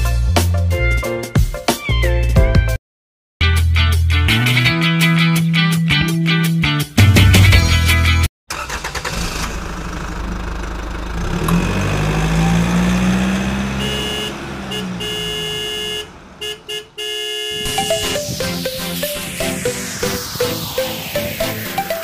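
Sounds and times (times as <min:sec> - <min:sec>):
vehicle engine running: 0:09.5 - 0:18.4
steady high tones: 0:17.6 - 0:22.0.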